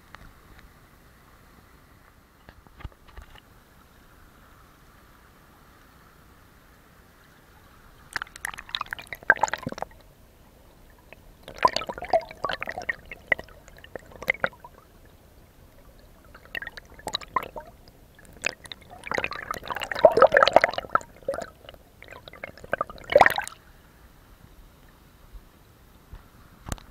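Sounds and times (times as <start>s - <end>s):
water splashing and sloshing: 2.5s - 3.5s, 8.0s - 23.7s.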